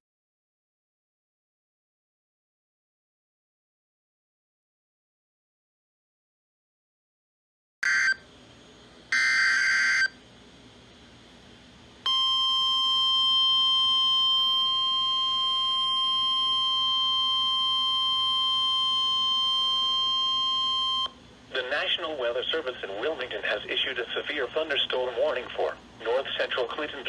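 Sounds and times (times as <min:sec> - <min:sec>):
steady warning alarm tone: 0:07.8 - 0:08.2, 0:09.1 - 0:10.2, 0:12.1 - 0:21.2.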